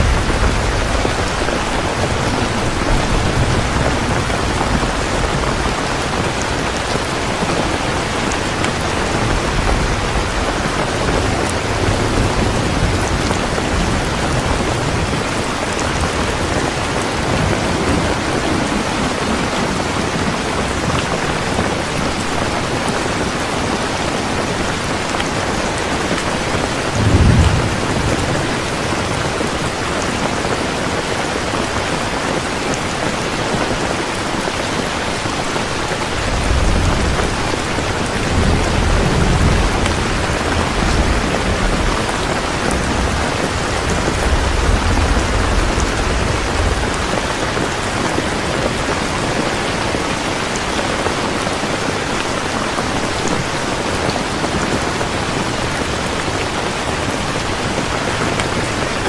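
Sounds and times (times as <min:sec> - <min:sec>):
low rolls of thunder: 0:00.0 - 0:22.4, 0:26.5 - 0:29.8, 0:36.1 - 0:48.8
thunder clap: 0:00.0 - 0:22.6, 0:26.1 - 0:29.8, 0:36.1 - 0:48.8
heavy rain falling: 0:00.0 - 0:59.0.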